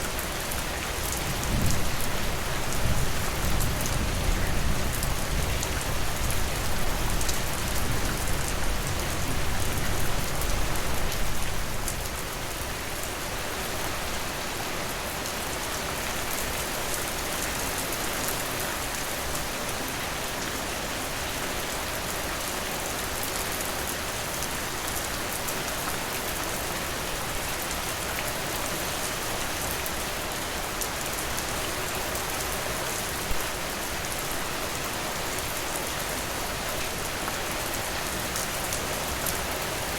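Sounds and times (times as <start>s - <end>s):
rain pattering: 0.0s - 14.1s.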